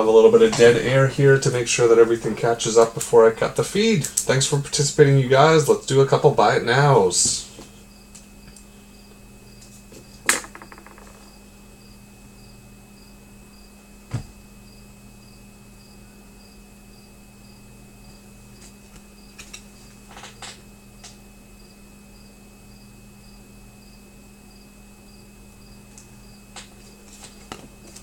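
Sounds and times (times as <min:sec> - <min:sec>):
low electrical hum: 0:00.0 - 0:28.0.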